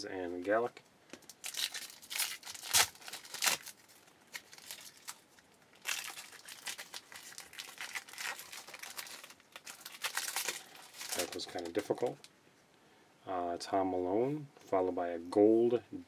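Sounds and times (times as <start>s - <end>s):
foil wrapper crinkling: 1.2s - 12.3s
foil wrapper ripping: 1.3s - 12.2s.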